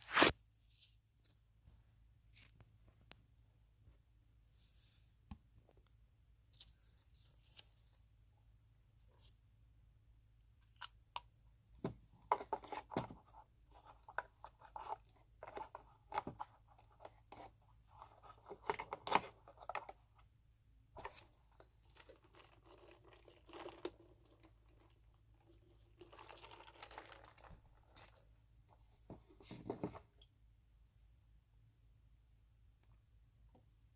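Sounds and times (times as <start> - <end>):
soft clicks crackles and scratches: 2.3 - 3.3.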